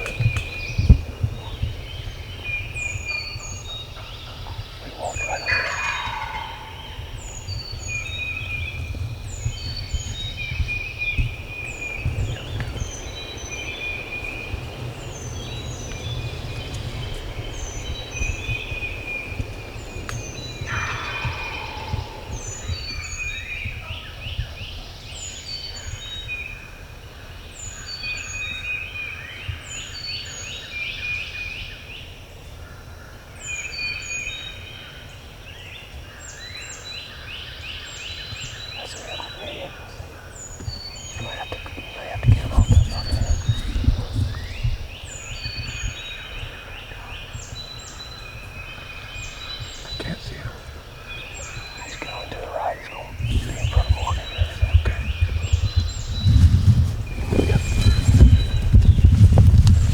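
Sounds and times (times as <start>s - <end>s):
songbirds chirping: 0.0s - 59.9s
turkey gobbling: 4.0s - 7.0s, 20.6s - 22.4s.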